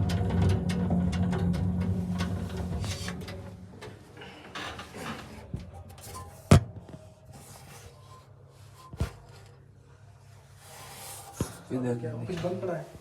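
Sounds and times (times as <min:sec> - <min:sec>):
air handling unit humming: 0:00.0 - 0:07.6.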